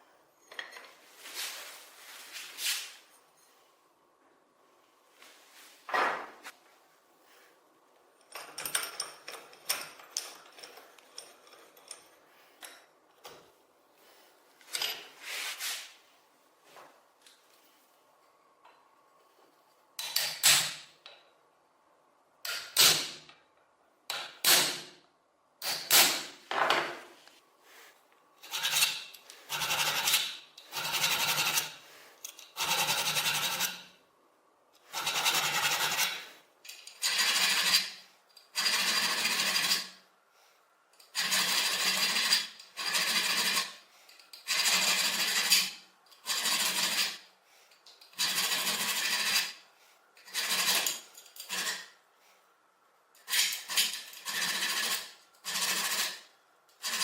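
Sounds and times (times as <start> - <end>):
hand tool filing metal: 28.4 - 31.8, 32.5 - 33.8, 34.9 - 36.4, 37.0 - 39.9, 41.1 - 43.8, 44.4 - 47.2, 48.1 - 49.6, 50.2 - 51.8, 53.3 - 57.0.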